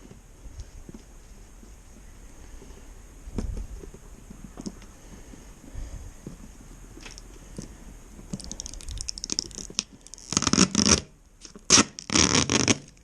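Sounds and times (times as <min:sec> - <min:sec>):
protective wrapping being pulled off: 0:08.4 - 0:13.0.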